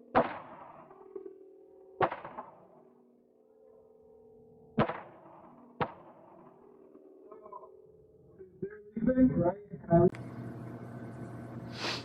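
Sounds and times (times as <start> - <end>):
gunshots with echo: 0.1 - 0.9, 2.0 - 2.6, 4.8 - 6.6
faint steady hum: 8.6 - 12.0.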